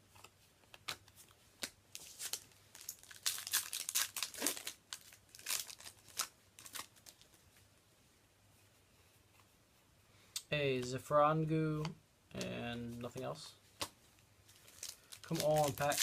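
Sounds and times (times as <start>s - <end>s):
foil wrapper crinkling and tearing: 2.0s - 7.3s, 14.6s - 16.0s.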